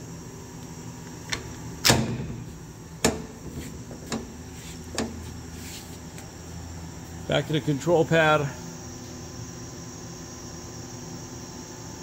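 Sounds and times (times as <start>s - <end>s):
sheet metal door clunks: 1.8s - 4.4s.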